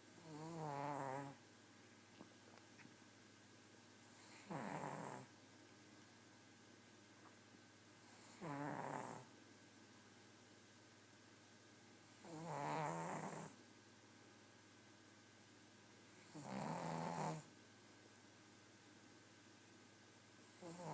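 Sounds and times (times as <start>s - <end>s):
dog snoring: 0.2s - 1.4s, 4.1s - 5.3s, 8.1s - 9.3s, 12.1s - 13.6s, 16.2s - 17.5s, 20.6s - 20.9s.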